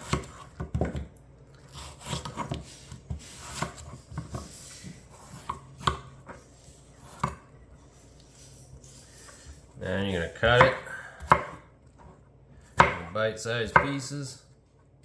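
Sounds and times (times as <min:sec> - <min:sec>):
knife cutting watermelon rind: 0:00.0 - 0:09.8.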